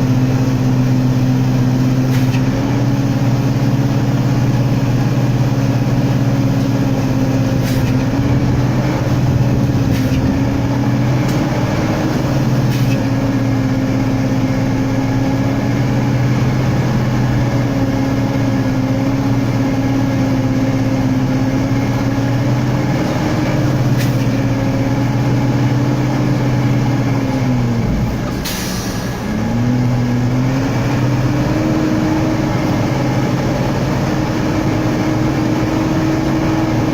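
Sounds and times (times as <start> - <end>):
diesel truck engine under load: 0.0 - 36.9
short air hiss: 28.4 - 29.2.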